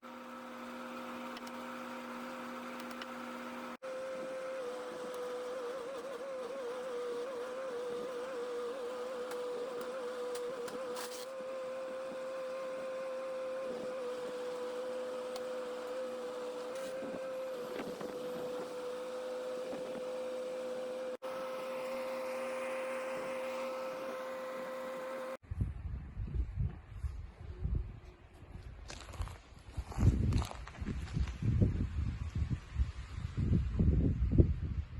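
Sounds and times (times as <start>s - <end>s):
wind buffeting microphone: 25.5s - 28.9s, 29.7s - 34.9s.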